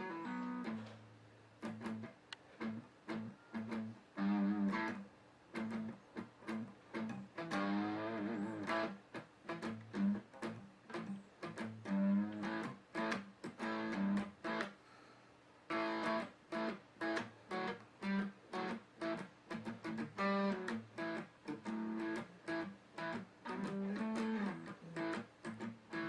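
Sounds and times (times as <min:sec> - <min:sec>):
guitar chords plucked and strummed: 0:00.0 - 0:14.8, 0:15.7 - 0:26.0.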